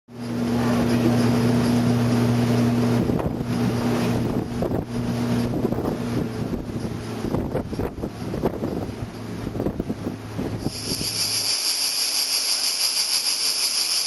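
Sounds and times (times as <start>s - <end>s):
speedboat engine droning: 0.1s - 14.0s
wind buffeting microphone: 0.3s - 11.4s.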